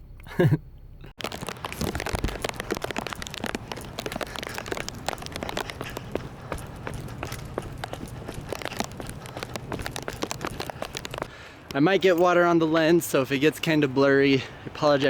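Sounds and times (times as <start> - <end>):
rain on plastic bag: 1.2 - 11.3.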